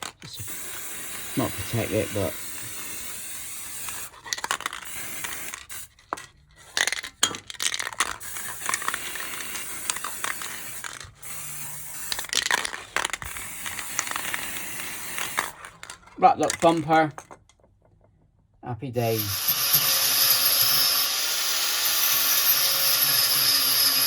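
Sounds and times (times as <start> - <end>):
spray paint hissing: 0.3 - 7.0, 8.0 - 15.7.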